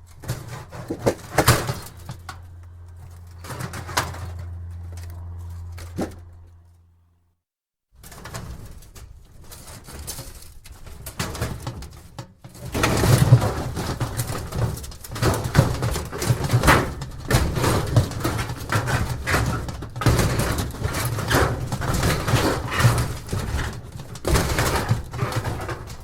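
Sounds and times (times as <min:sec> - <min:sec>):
sheet metal debris clattering: 0:00.0 - 0:06.4, 0:12.6 - 0:26.0.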